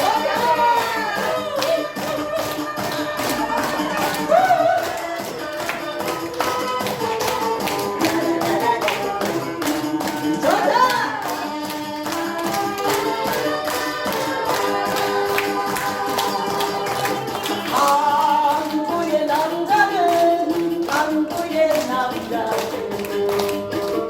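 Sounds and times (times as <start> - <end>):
music with sung melody: 0.0 - 24.0.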